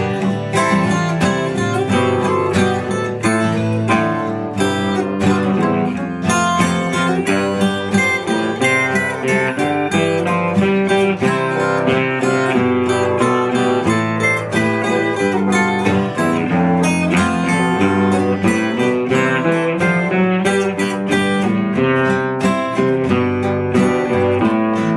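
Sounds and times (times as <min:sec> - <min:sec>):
acoustic guitar strumming: 0:00.0 - 0:24.9.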